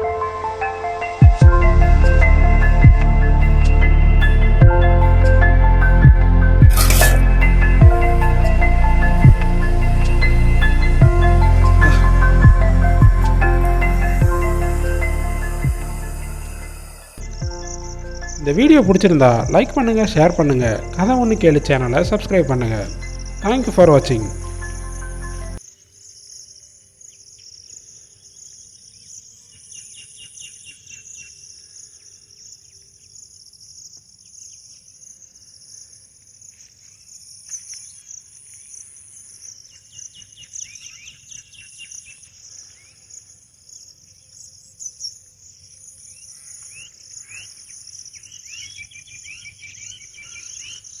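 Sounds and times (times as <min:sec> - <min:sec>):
high-pitched insect chorus: 0:06.7 - 0:21.4
pulsing insect layer: 0:06.7 - 0:25.6.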